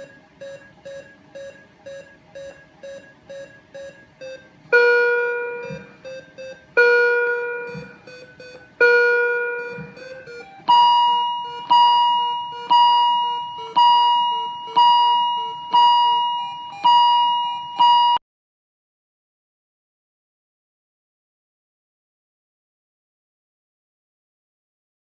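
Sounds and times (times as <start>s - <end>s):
alarm clock chiming ringtone: 0.0s - 18.2s.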